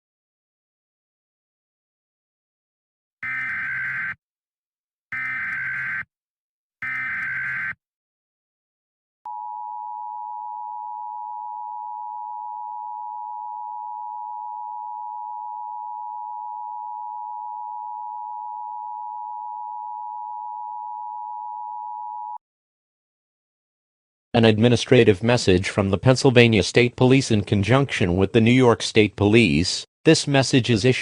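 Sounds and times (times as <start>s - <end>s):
steady attention tone: 9.3s - 22.4s.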